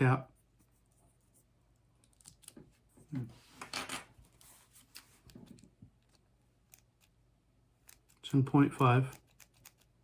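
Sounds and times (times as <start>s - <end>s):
mechanical pencil clicking and rubbing: 7.8s - 10.0s.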